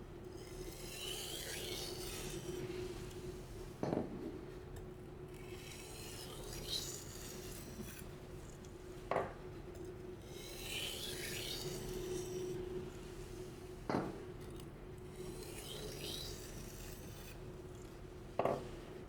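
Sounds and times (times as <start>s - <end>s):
knife scraping on whetstone: 0.4s - 3.0s, 5.6s - 8.1s, 10.4s - 13.4s, 14.4s - 18.0s.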